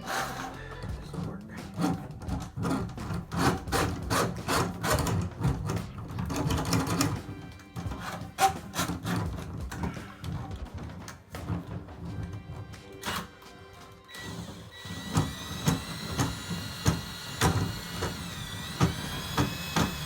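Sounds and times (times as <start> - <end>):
cable knocking and scraping: 0.0 - 20.0
drain cleaning machine motor hum: 14.1 - 20.0.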